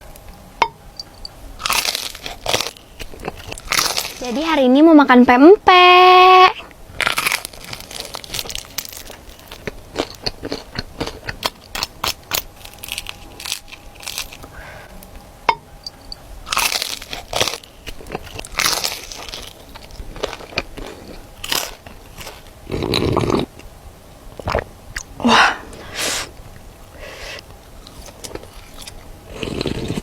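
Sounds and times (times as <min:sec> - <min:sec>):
crunching of crispy fried food: 0:01.6 - 0:04.6, 0:06.9 - 0:15.0, 0:15.9 - 0:23.7, 0:27.4 - 0:30.0.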